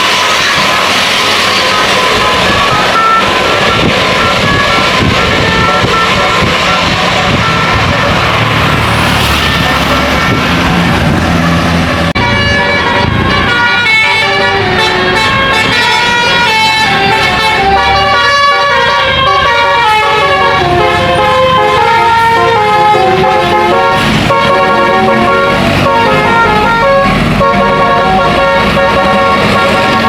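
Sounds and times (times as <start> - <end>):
bus engine rumble: 0.0 - 30.0
multi-tone bus horn melody: 0.0 - 30.0.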